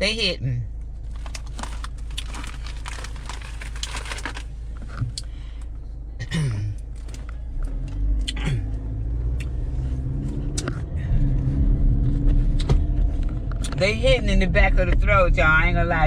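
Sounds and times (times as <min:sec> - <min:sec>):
car engine rumble: 0:00.0 - 0:16.0
chewing potato chips: 0:01.1 - 0:04.5.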